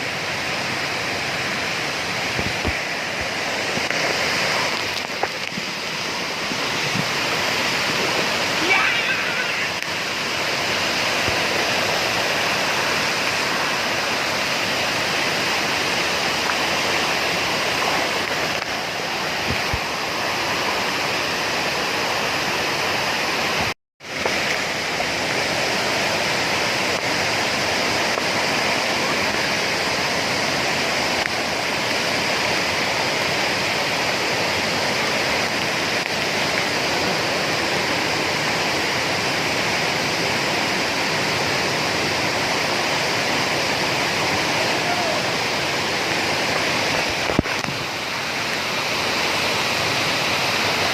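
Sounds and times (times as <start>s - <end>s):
waterfall rushing: 0.0s - 50.9s.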